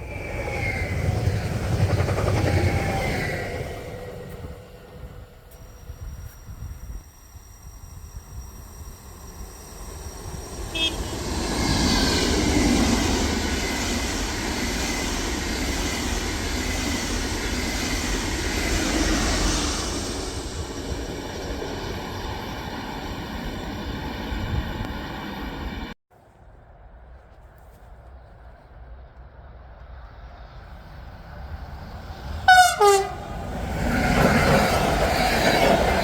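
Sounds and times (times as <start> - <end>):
train passing at speed: 0.0 - 26.0, 28.6 - 36.0
train horn: 10.7 - 11.4, 32.5 - 33.4.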